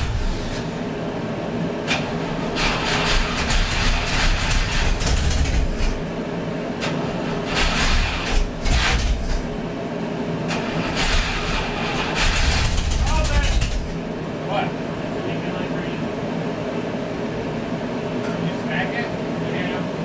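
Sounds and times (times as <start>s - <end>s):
car engine running: 2.6s - 6.3s, 10.8s - 14.1s.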